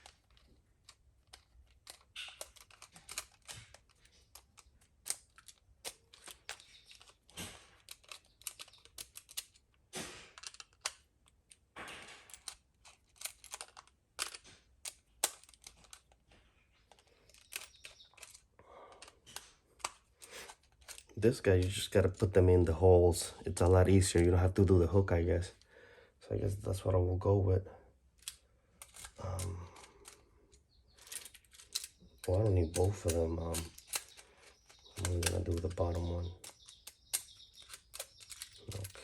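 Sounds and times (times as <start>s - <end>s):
hands handling electrical outlet: 0.0s - 9.7s, 10.3s - 22.4s, 28.2s - 39.0s.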